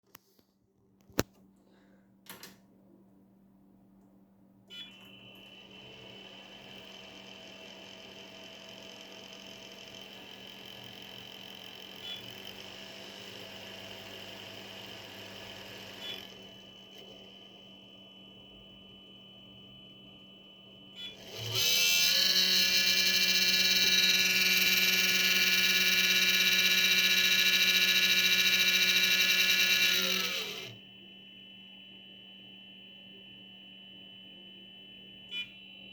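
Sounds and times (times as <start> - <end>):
blower fan humming and whining: 5.0 - 19.4, 20.1 - 31.4.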